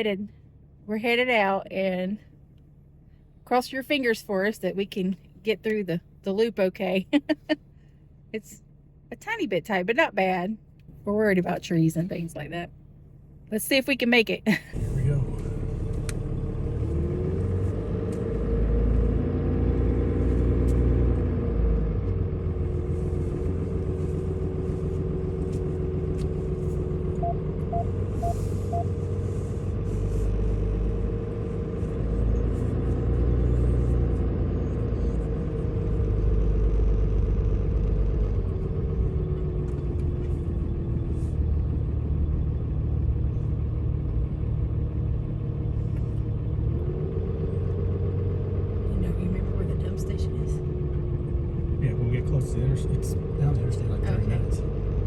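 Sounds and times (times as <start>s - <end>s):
truck engine low rumble: 0.0s - 55.0s
short beeps: 27.2s - 28.9s.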